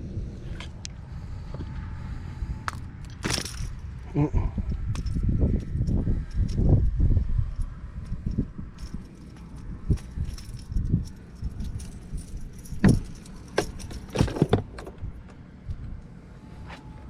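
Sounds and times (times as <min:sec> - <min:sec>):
rattling and knocking handling noise: 0:02.7 - 0:04.0, 0:08.0 - 0:15.4
dull thumps: 0:12.8 - 0:15.0.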